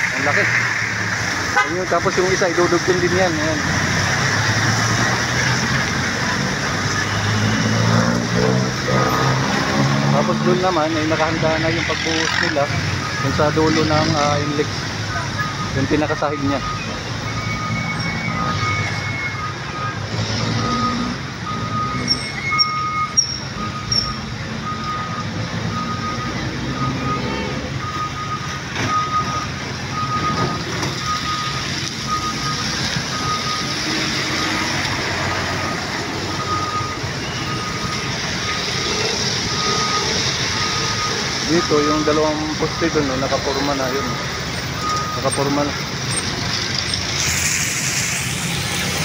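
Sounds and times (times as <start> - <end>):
heavy vehicle engines: 0.0 - 49.0
reversing alarm beeping: 8.9 - 14.7, 15.4 - 46.2.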